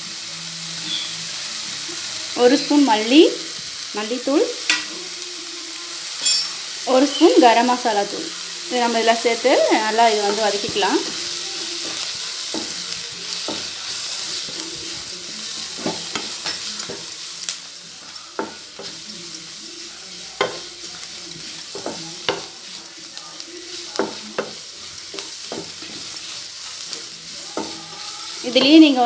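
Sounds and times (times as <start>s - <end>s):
filling sizzling in hot oil: 0.0s - 29.0s
spoon knocking and scraping pan: 8.9s - 29.0s.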